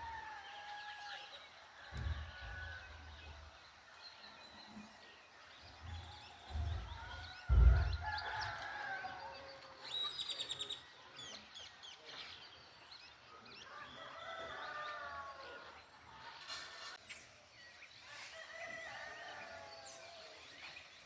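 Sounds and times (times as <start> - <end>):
roosters crowing: 0.0 - 3.6, 5.7 - 9.7, 13.7 - 15.8, 18.1 - 20.5
small birds chirping: 0.3 - 21.0
low thump: 1.9 - 2.9, 5.8 - 8.5.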